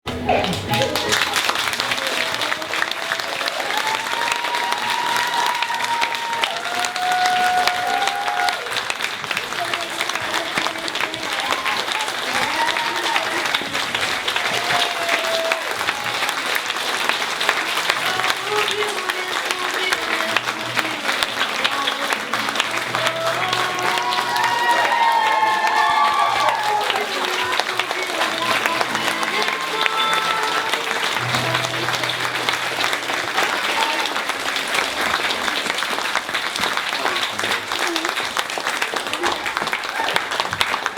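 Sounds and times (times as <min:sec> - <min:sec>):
music playing: 0:00.0 - 0:05.5, 0:15.5 - 0:35.0
audience applauding: 0:00.0 - 0:40.9
voices calling out: 0:17.5 - 0:35.4.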